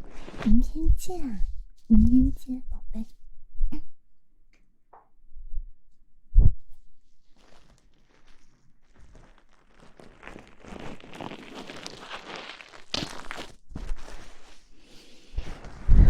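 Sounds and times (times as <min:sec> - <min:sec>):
rustling on microphone: 0:00.0 - 0:03.2, 0:06.6 - 0:16.0.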